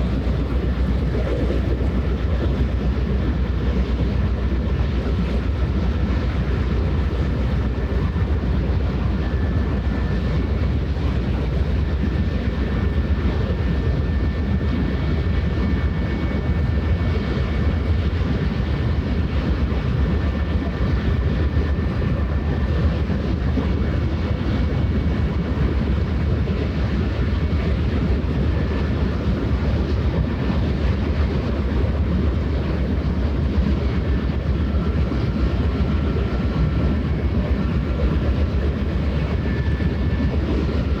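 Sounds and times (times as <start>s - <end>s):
ship engine drone: 0.0s - 41.0s.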